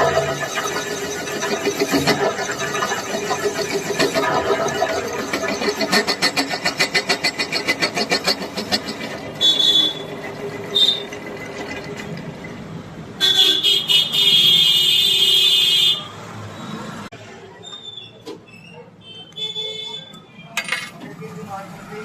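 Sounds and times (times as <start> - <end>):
milling cutter chatter: 0.0 - 12.2
cutter squealing: 0.0 - 12.6.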